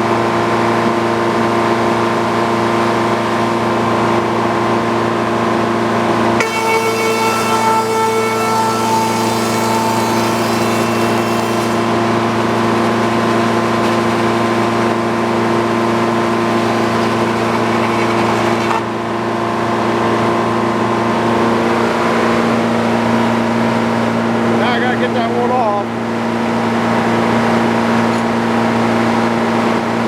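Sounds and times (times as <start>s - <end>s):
sawmill engine droning: 2.7s - 25.3s
saw blade hissing through board: 6.4s - 18.9s.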